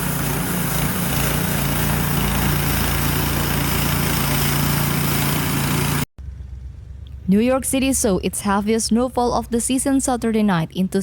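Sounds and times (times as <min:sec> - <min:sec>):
small engine running: 0:00.0 - 0:07.7.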